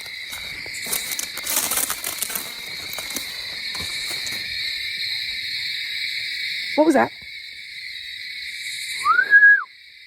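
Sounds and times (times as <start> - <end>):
rustling: 0.0 - 4.8
night insects trilling: 0.0 - 10.0.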